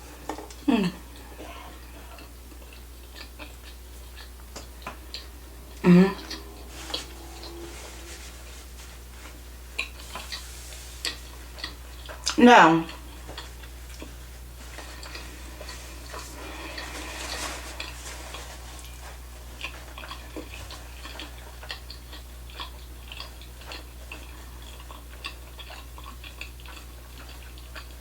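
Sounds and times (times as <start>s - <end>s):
steady low hum: 0.0s - 28.0s
wet chewing sounds: 0.2s - 7.6s, 11.0s - 28.0s.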